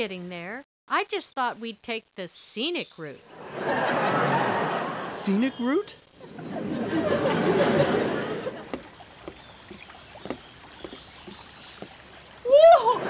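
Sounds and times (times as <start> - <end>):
footsteps crunching on trail: 8.6 - 12.4.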